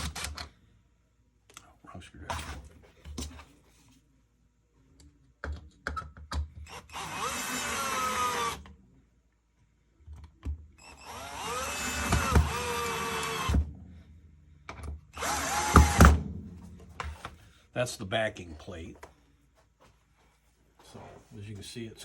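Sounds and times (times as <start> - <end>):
power drill driving screws: 0.0 - 0.5, 6.7 - 8.7, 10.8 - 13.7, 15.2 - 16.2.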